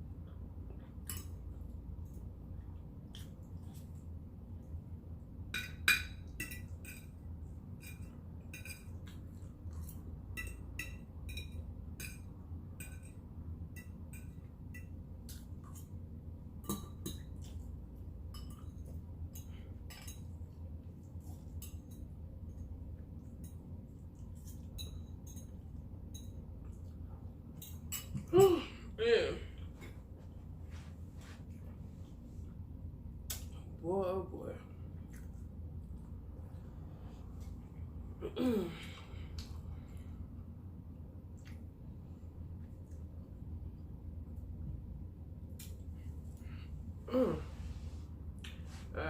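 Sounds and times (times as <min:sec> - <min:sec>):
steady low hum: 0:00.0 - 0:49.0
cutlery clinking against dishes: 0:05.5 - 0:07.2, 0:07.8 - 0:09.2, 0:10.3 - 0:13.2, 0:18.3 - 0:20.4, 0:27.6 - 0:28.3.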